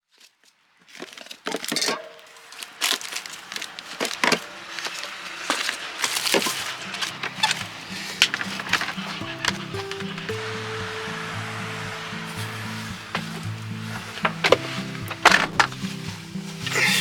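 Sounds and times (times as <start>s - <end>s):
low music tones: 6.8s - 17.0s.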